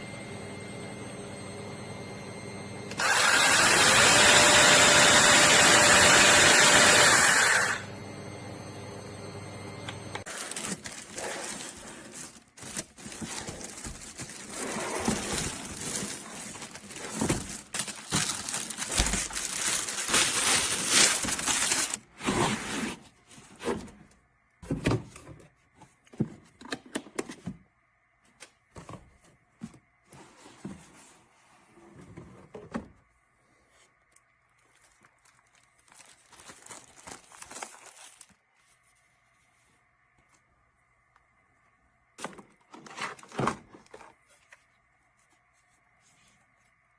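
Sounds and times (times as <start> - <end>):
wood cracking and crunching: 15.3 - 22.0, 34.8 - 38.4.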